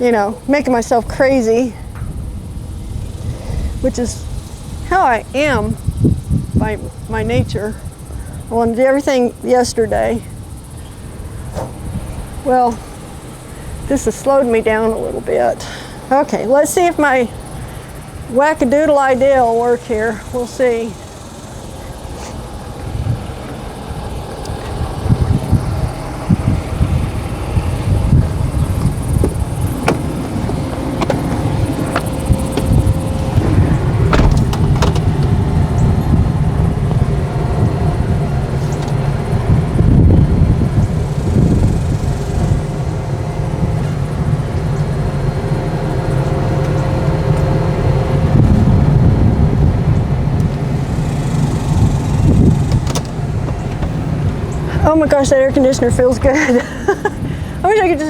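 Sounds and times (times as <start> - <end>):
vehicle engine rumbling: 0.0 - 58.0
sharp clicks and knocks: 28.8 - 33.4, 34.1 - 35.4.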